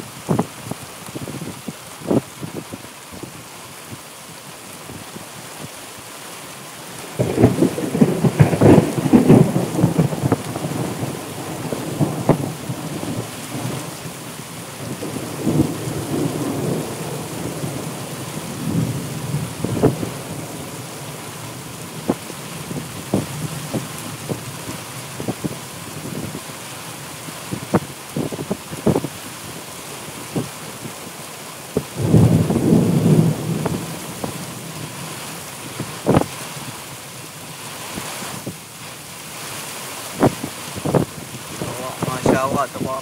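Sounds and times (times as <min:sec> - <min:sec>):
steady rain: 0:00.0 - 0:43.0
thunder rumbling and cracking: 0:06.9 - 0:26.4, 0:31.7 - 0:36.3, 0:40.2 - 0:43.0.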